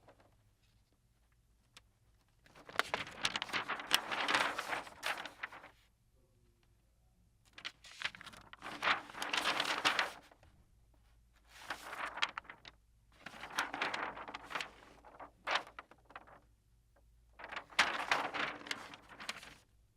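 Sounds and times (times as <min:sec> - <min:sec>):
paper flick: 0:01.7 - 0:05.8, 0:07.5 - 0:10.4, 0:11.5 - 0:16.4, 0:17.4 - 0:19.6
paper sheets rustling: 0:01.7 - 0:05.8, 0:07.5 - 0:10.4, 0:11.4 - 0:16.4, 0:17.4 - 0:19.7.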